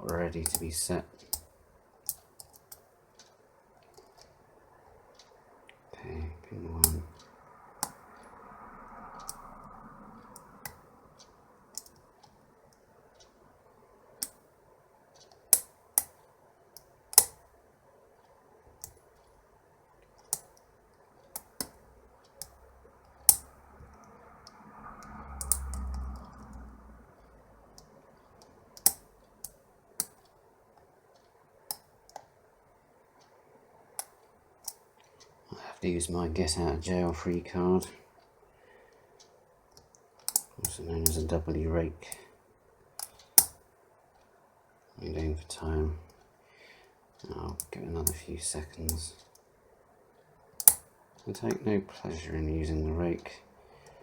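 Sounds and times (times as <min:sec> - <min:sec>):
lock picking clicks: 0:17.1 - 0:17.4, 0:40.2 - 0:41.2, 0:43.0 - 0:43.6, 0:50.6 - 0:50.9.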